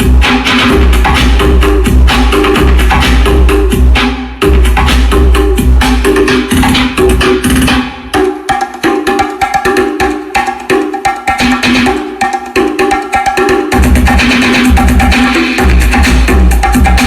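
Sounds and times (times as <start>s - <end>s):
deep bass: 0.0s - 7.2s, 15.6s - 17.0s
loud music through car speakers: 0.0s - 17.0s.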